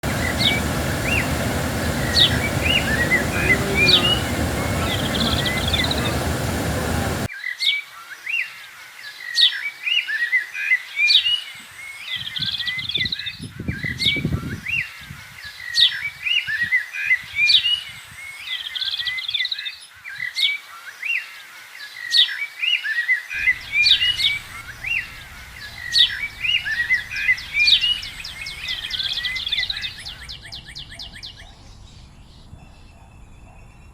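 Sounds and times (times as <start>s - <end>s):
songbirds chirping and singing: 0.0s - 7.3s, 23.4s - 33.9s
steady rushing noise: 0.0s - 7.3s, 23.4s - 32.2s.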